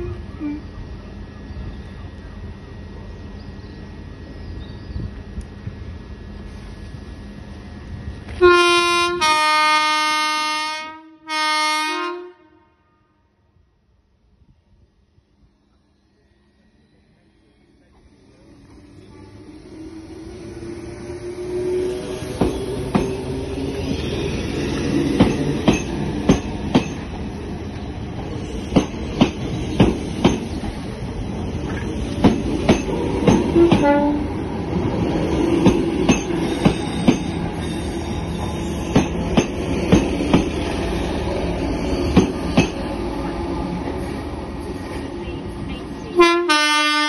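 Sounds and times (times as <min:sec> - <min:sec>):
train rumble: 0:00.0 - 0:11.8, 0:13.9 - 0:47.0
train wheels clattering over rail joints: 0:22.3 - 0:23.3, 0:24.8 - 0:27.2, 0:28.2 - 0:30.8, 0:31.6 - 0:34.0, 0:35.6 - 0:37.6, 0:38.4 - 0:40.6, 0:42.1 - 0:42.9.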